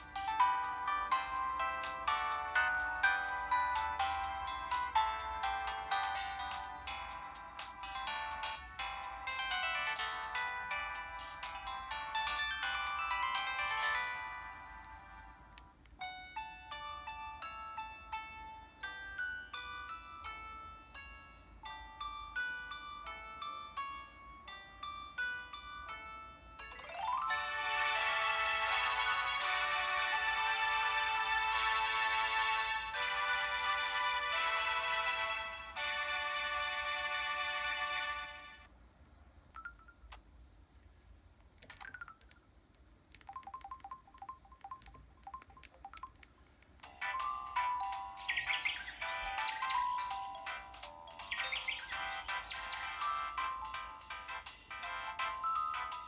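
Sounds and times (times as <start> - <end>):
phone ringtone melody: 0.0 - 15.4, 16.0 - 38.7, 39.6 - 40.2, 41.8 - 42.5, 43.2 - 56.0
falling electronic chirp: 47.0 - 54.3.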